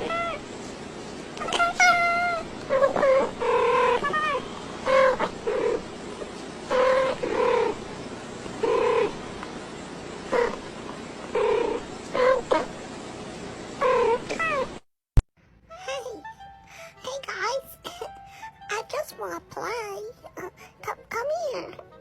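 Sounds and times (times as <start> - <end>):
steady hiss: 0.0 - 14.2.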